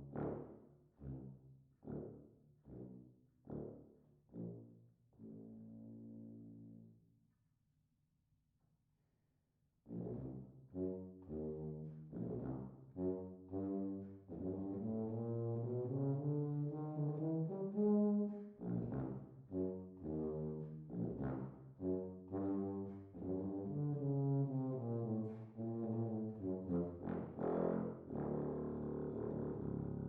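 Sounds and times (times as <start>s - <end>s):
low brass instrument solo: 9.9s - 30.0s.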